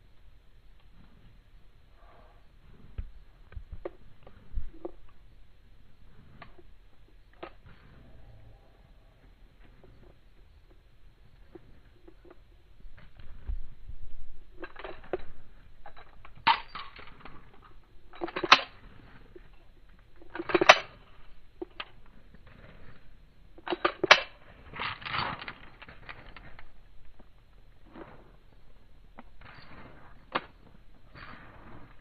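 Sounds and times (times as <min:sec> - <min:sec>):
handgun metallic clacks: 0:14.6 - 0:19.6, 0:20.2 - 0:22.0, 0:23.6 - 0:27.3.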